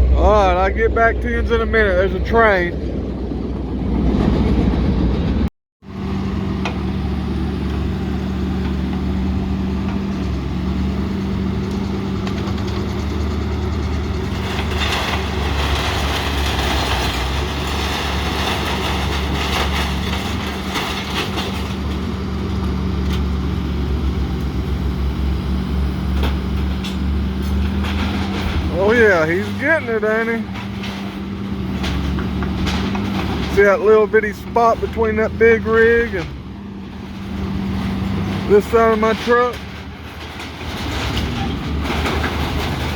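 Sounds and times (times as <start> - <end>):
truck engine idling: 5.8 - 42.9.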